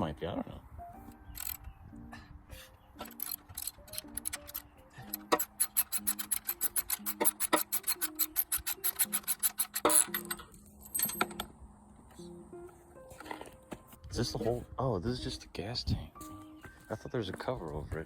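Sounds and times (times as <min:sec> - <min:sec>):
ratchet wrench clicking: 0:01.3 - 0:01.6, 0:03.0 - 0:11.5.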